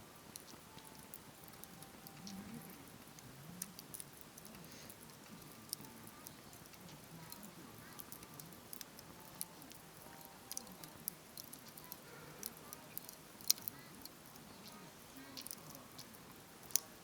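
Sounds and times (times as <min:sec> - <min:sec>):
campfire crackling and popping: 0:00.0 - 0:17.0.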